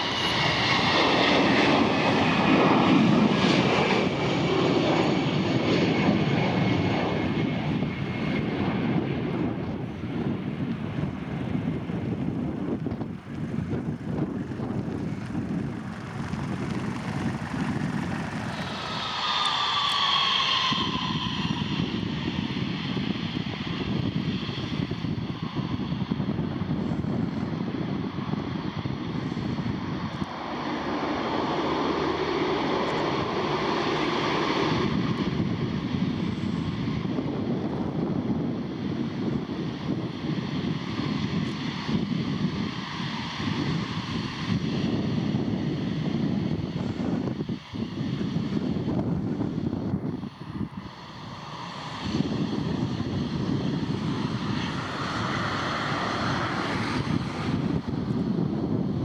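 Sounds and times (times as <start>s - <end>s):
high engine whine: 0.0s - 27.2s, 29.6s - 59.0s
jet engines roaring: 0.0s - 59.0s
wind buffeting microphone: 0.0s - 59.0s.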